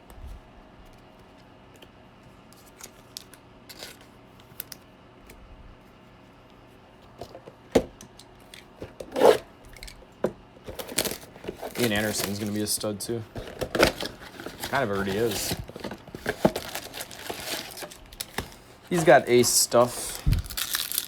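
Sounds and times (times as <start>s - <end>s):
card pack rustling: 10.7s - 21.0s.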